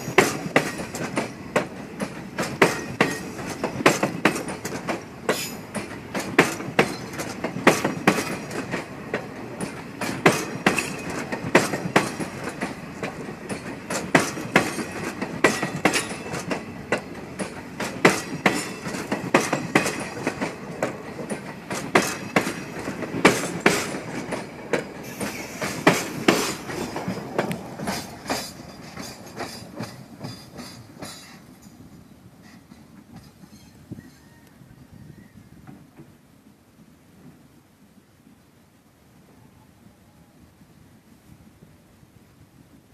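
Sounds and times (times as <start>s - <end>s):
train wheels clattering over points: 0.0s - 31.8s
train rumble: 0.0s - 38.2s.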